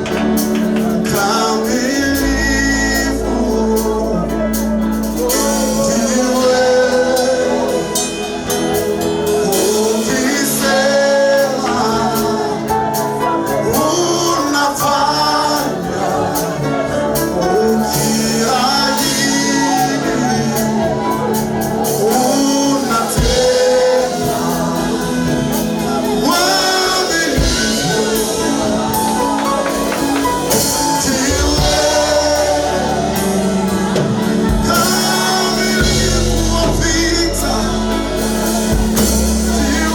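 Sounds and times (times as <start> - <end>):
band accompaniment: 0.0 - 39.9
voices singing gospel: 0.0 - 39.9
steady percussion: 15.6 - 39.9.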